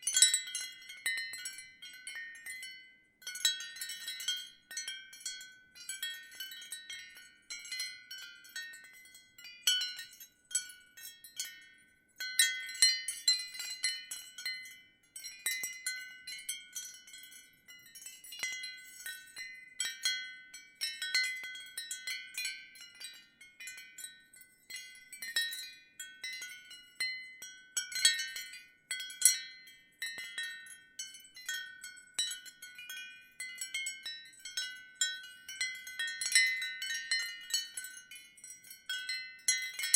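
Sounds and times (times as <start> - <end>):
ceramic wind chimes tinkling: 0.0 - 39.9.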